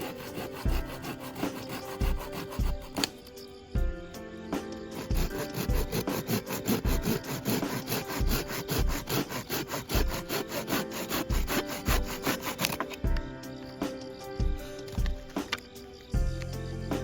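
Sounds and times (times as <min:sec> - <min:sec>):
hand saw cutting wood: 0:00.0 - 0:03.3, 0:04.9 - 0:13.0.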